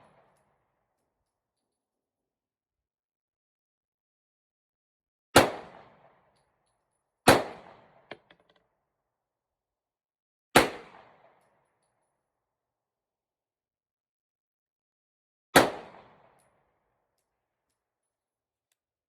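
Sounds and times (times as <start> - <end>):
pistol shots with echo: 5.4 - 6.2, 7.3 - 8.3, 10.6 - 11.4, 15.6 - 16.3.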